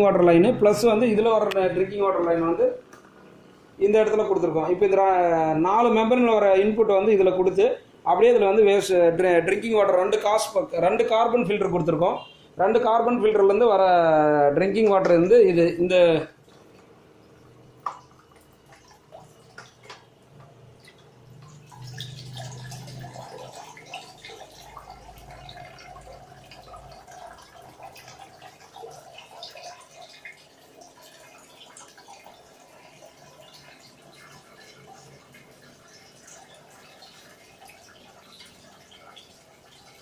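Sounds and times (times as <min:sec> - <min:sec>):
water trickling and dripping: 0:14.9 - 0:40.0.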